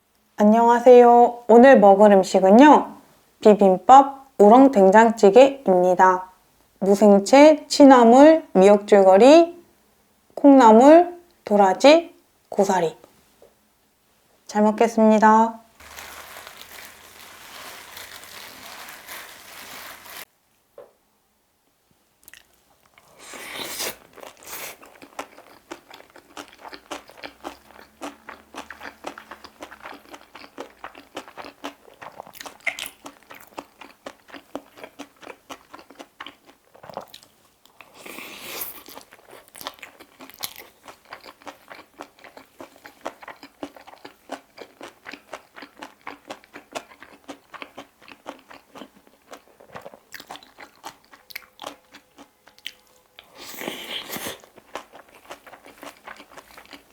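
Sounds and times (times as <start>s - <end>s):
close chewing with wet crunching: 22.2s - 38.0s, 38.7s - 56.9s.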